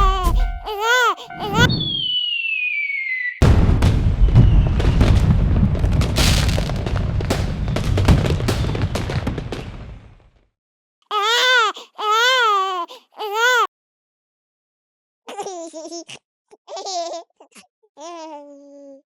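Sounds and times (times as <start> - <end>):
descending whistle: 0.0 - 3.5, 4.2 - 5.2
loud explosion with rumble: 1.4 - 2.2, 3.4 - 10.4.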